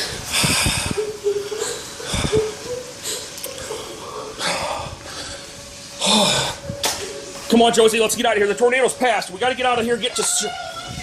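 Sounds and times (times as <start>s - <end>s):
person breathing hard: 0.0s - 6.7s
thin steady whine: 0.0s - 11.0s.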